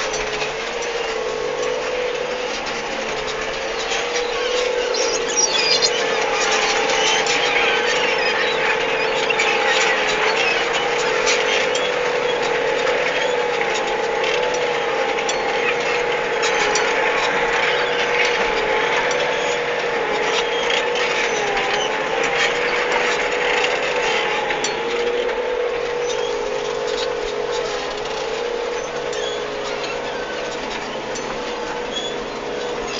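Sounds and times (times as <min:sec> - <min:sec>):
steady whine: 0:00.0 - 0:21.2
tractor engine running: 0:00.0 - 0:32.9.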